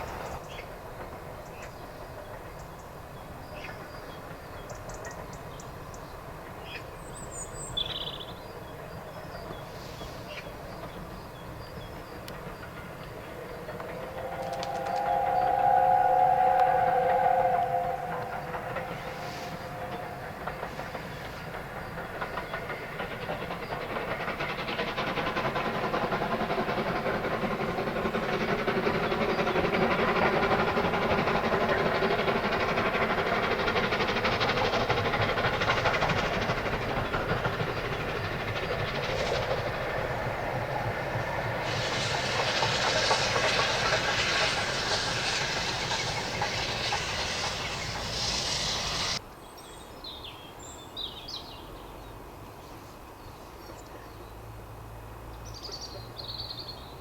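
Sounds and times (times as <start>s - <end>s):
sharp steam hiss: 9.1s - 11.1s, 13.0s - 22.1s, 22.8s - 49.2s
two-note steam whistle: 14.0s - 20.3s
wheels clicking over rail joints: 17.7s - 49.2s.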